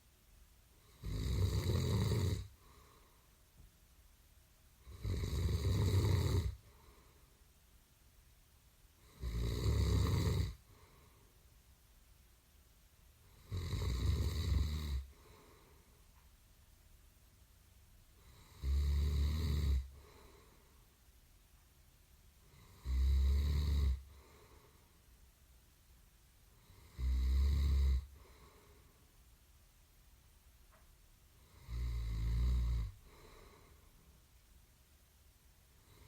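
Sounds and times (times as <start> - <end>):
loud snoring: 0.9 - 2.5, 4.8 - 6.6, 9.0 - 10.6, 13.3 - 15.2, 18.2 - 20.0, 22.5 - 24.2, 26.6 - 28.1, 31.5 - 33.4
faint breath out: 19.9 - 20.9.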